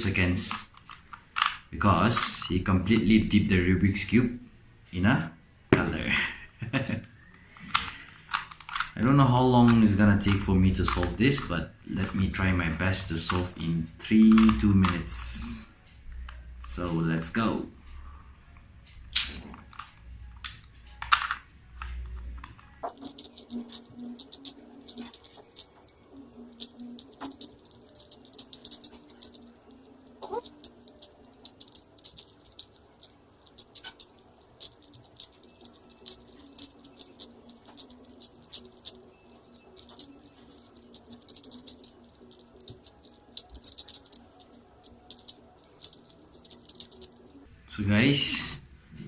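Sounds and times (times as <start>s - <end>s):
puzzle cube clicking: 7.3s - 11.5s, 14.2s - 15.1s, 19.1s - 47.5s.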